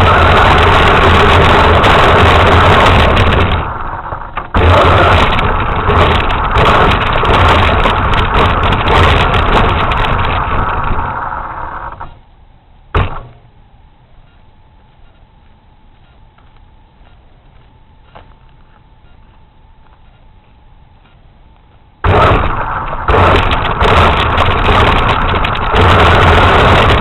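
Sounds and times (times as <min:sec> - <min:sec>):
rc truck motor running: 0:00.0 - 0:12.2, 0:22.0 - 0:27.0.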